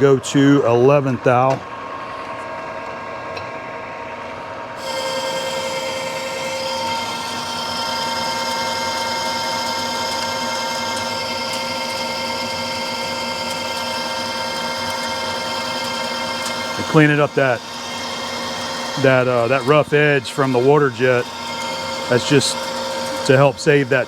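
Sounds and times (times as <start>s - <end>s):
lathe gears and motor whining: 4.8s - 24.0s
lathe tool cutting metal: 4.8s - 24.0s.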